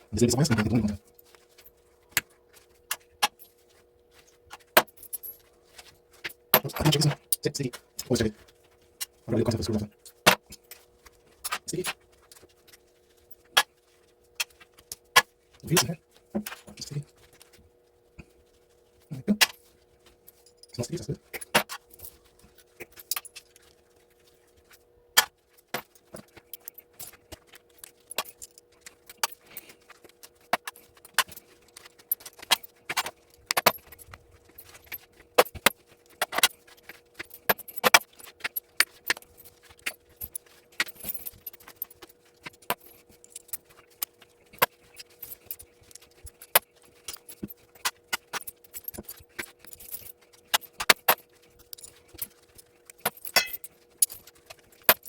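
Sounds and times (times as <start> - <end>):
small brass parts clinking: 4.2 - 8.3, 20.2 - 23.8, 25.2 - 55.0.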